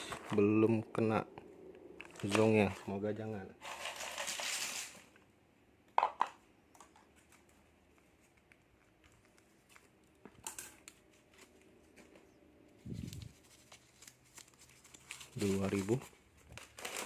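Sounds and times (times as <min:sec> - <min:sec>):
plastic snack packets crinkling: 0:13.4 - 0:17.0.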